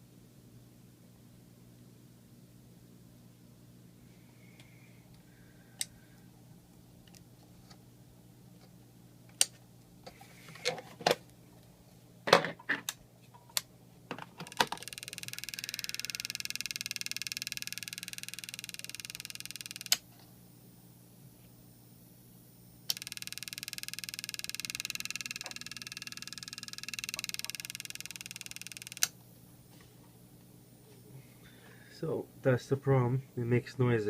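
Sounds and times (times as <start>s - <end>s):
device handling clicks and knocks: 12.3s - 15.0s
high fast-pulsing electronic buzz: 14.7s - 20.8s, 21.6s - 29.2s.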